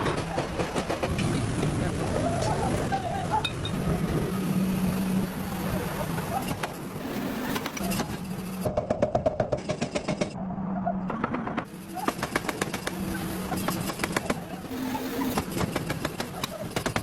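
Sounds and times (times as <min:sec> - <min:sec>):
mechanical hammering on metal: 0:11.6 - 0:17.0.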